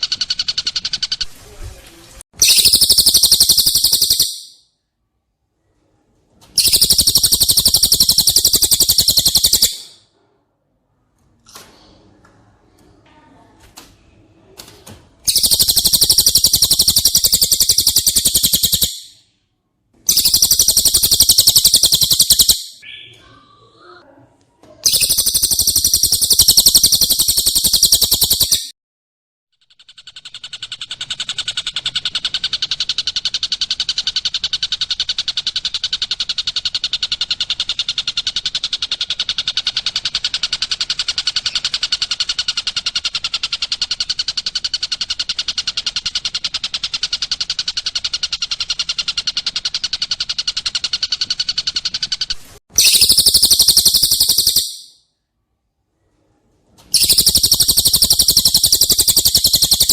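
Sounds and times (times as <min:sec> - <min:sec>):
rapid steady bird trill: 0:00.0 - 0:01.2, 0:02.4 - 0:04.7, 0:06.6 - 0:10.1, 0:15.2 - 0:19.3, 0:20.1 - 0:23.2, 0:24.8 - 0:28.8, 0:29.6 - 0:55.1, 0:56.9 - 0:59.9
shrill high bird trill: 0:02.4 - 0:04.6, 0:06.6 - 0:10.1, 0:15.3 - 0:19.2, 0:20.1 - 0:23.6, 0:24.8 - 0:28.7, 0:52.7 - 0:55.0, 0:56.9 - 0:59.9.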